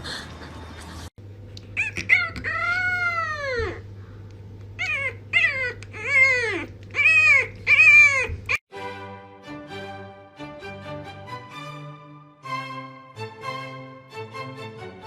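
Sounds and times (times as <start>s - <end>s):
pet animal crying: 1.6s - 3.9s, 4.8s - 8.6s.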